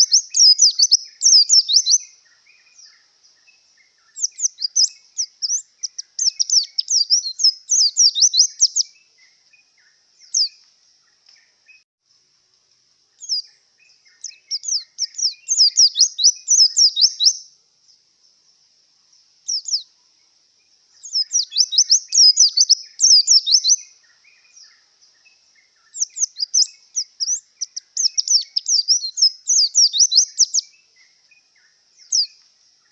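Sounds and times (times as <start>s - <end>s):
bird twittering song: 0.0s - 11.9s, 13.1s - 32.9s.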